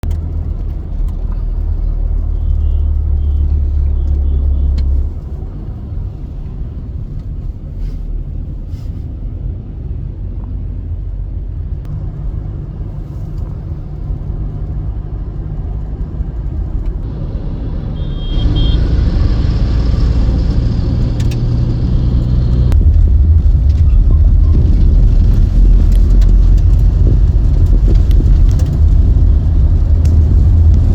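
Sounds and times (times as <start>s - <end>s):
road traffic rumble: 0.0s - 30.9s
faint short horn beeps: 17.9s - 18.9s.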